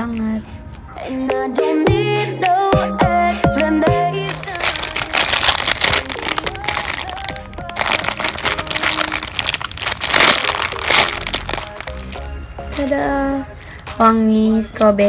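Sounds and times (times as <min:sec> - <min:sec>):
background music: 0:00.0 - 0:15.0
rustling and crinkling handling noise: 0:04.1 - 0:15.0.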